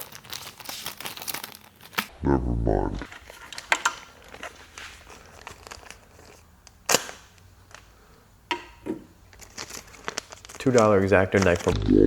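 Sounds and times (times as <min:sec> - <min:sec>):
package rustling and scraping: 0:00.0 - 0:02.1, 0:03.1 - 0:07.9, 0:09.3 - 0:11.8.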